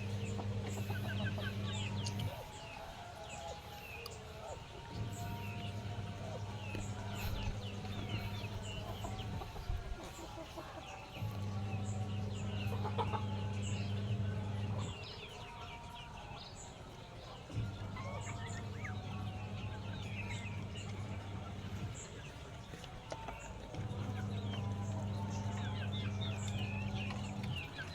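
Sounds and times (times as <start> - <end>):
chickens clucking: 0.0 - 27.9
chicks peeping: 0.0 - 27.9
low steady hum: 0.0 - 27.9.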